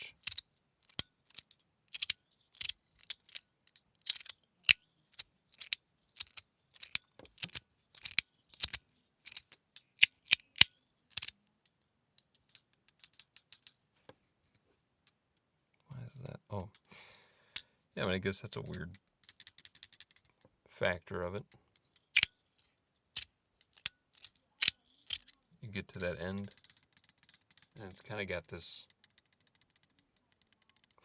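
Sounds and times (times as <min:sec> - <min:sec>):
metal fidget slider clicking: 0:00.2 - 0:03.4, 0:04.0 - 0:11.4, 0:22.1 - 0:22.3, 0:23.2 - 0:25.4.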